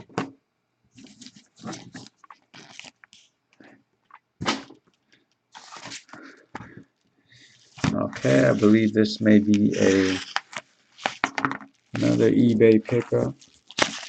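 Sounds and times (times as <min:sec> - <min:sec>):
package rustling and scraping: 0:01.0 - 0:03.4, 0:05.5 - 0:06.8, 0:07.5 - 0:14.0.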